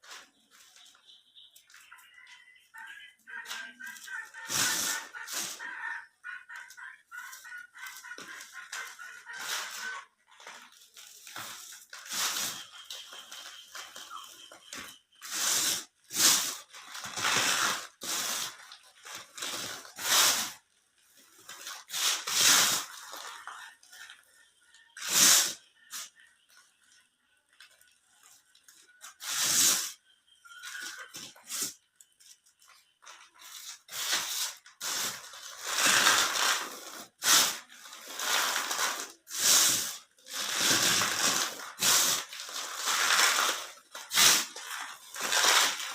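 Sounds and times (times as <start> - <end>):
crunchy crumbling: 30.5 - 45.9.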